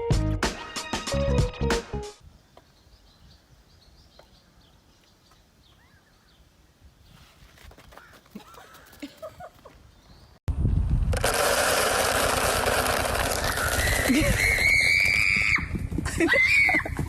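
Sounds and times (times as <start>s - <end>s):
music: 0.0s - 2.2s
faint bird chirps: 2.4s - 7.2s.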